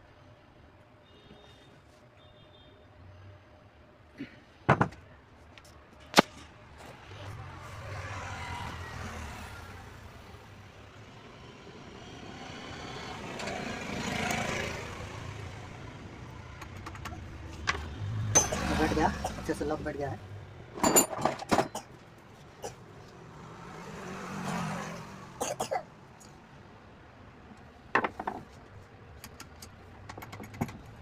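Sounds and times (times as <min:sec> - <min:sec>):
passing road traffic: 0:06.2 - 0:31.0.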